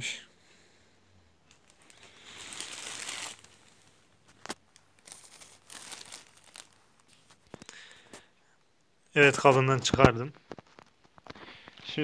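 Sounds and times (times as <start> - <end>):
plastic packaging crinkling: 1.5 - 8.0.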